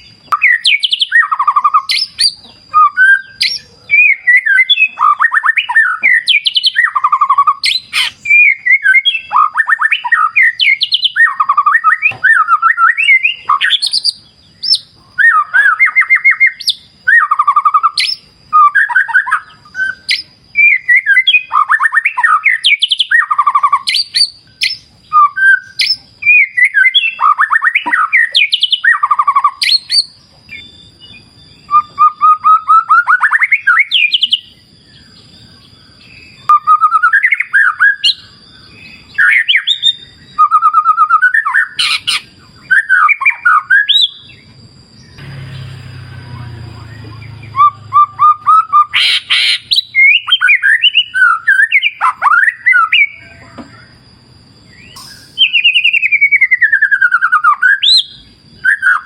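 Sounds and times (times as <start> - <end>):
bird singing whistles and trills: 0.0 - 59.0
thin high tone: 45.0 - 50.0, 52.6 - 57.2.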